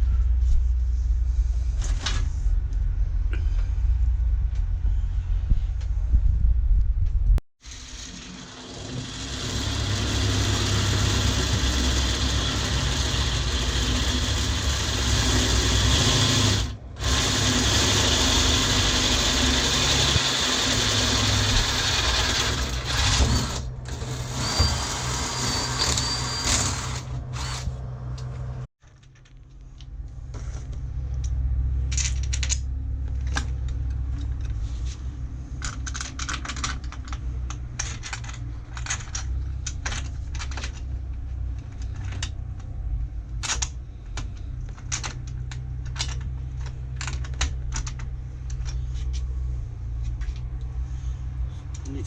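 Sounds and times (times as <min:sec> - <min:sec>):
low hum: 0:00.0 - 0:08.5
power tool grinding steel: 0:07.6 - 0:27.8.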